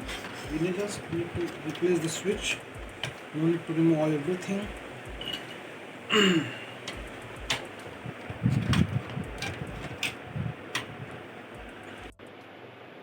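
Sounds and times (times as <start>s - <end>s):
plastic and metal parts clicking: 0.0s - 3.3s, 6.8s - 12.1s
low handling rumble: 0.0s - 12.2s.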